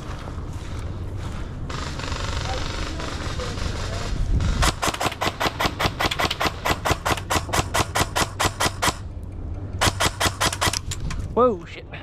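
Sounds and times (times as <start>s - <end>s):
airsoft gun firing: 1.7s - 9.1s, 9.8s - 10.9s.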